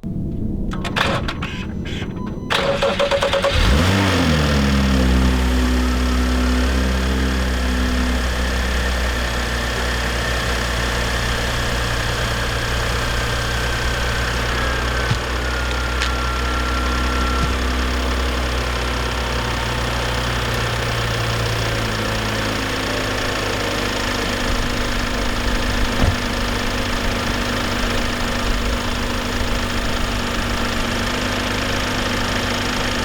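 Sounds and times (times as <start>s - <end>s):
car engine idling: 0.0s - 33.0s
engine starter cranking: 0.4s - 6.9s, 11.1s - 31.0s.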